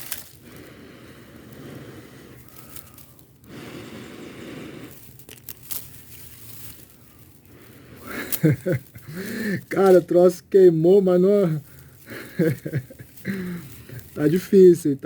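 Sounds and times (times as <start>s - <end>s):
person blowing long breaths: 0.0s - 9.7s, 11.6s - 14.2s
tinder crackling and rustling: 0.0s - 15.0s.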